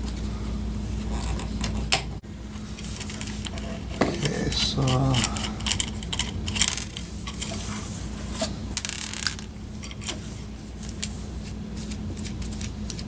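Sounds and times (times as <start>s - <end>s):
steady low hum: 0.0s - 13.0s
hardware clicking and rattling: 3.0s - 7.6s.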